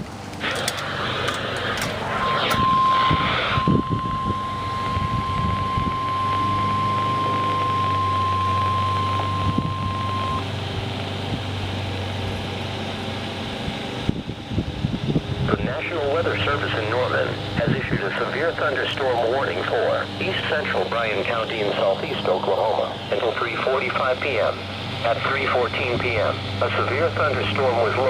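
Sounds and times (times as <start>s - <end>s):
low hum: 0.0s - 28.0s
high-pitched alarm tone: 0.4s - 10.6s, 16.8s - 28.0s.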